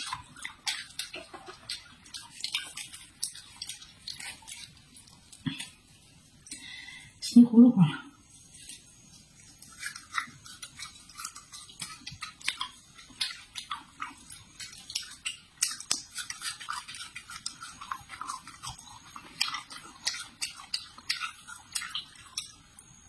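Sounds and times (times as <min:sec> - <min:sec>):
crisp chewing crackles: 0:00.0 - 0:07.4, 0:08.1 - 0:23.0
wet mouth clicks: 0:09.7 - 0:22.5.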